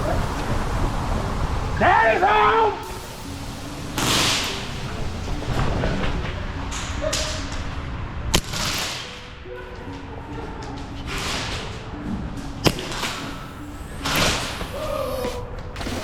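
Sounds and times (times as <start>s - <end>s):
whooshing swells: 0.0s - 10.4s
background music with held notes: 0.0s - 16.0s
sharp crack: 2.8s - 7.7s, 8.3s - 9.4s, 12.6s - 16.0s.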